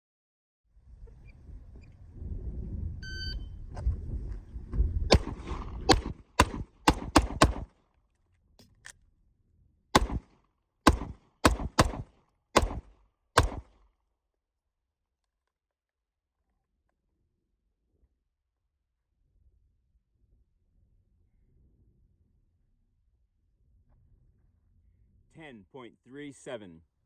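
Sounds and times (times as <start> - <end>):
pistol shots: 5.1 - 7.7, 10.0 - 13.8.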